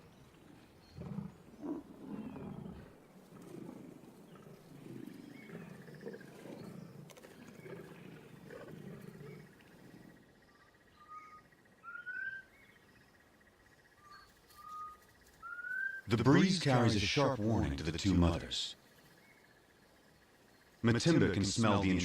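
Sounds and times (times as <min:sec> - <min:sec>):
lions growling: 0:00.1 - 0:10.6.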